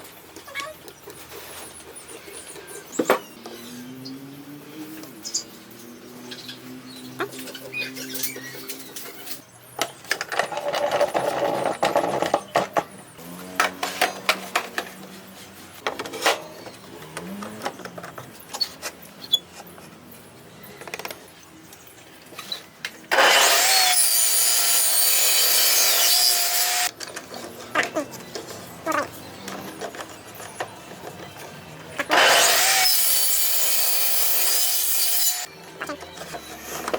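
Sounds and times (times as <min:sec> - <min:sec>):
power tool whining: 0:23.1 - 0:26.9, 0:32.0 - 0:35.5.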